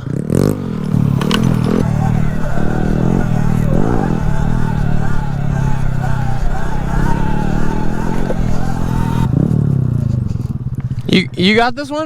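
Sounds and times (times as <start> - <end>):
motorcycle engines droning: 0.0 - 12.0
road noise: 0.0 - 12.0.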